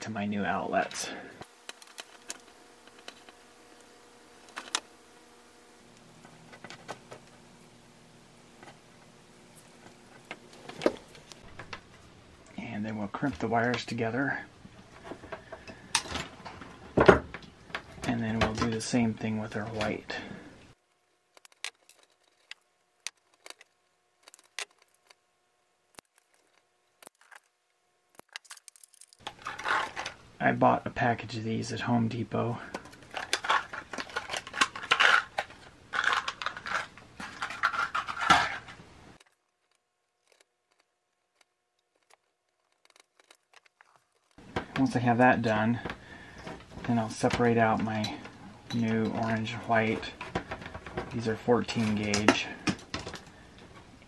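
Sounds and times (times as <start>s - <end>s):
clicks and taps handling wire: 21.3s - 25.2s, 39.2s - 53.8s.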